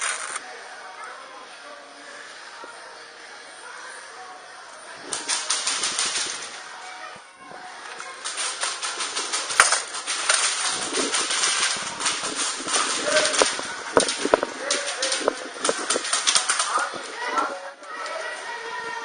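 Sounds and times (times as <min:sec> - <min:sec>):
airsoft guns firing bursts: 0:05.2 - 0:06.6, 0:08.1 - 0:17.1
loud crack: 0:08.3 - 0:16.7.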